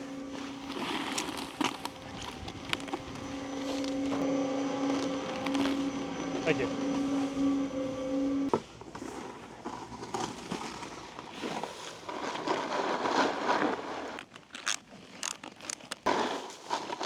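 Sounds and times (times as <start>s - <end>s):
snowboard scraping over icy snow: 9.8s - 14.2s, 16.1s - 17.0s.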